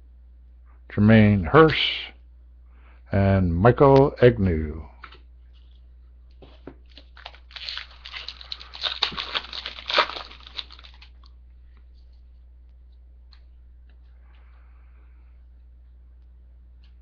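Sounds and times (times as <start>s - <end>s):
foil wrapper crinkling: 6.4s - 11.4s.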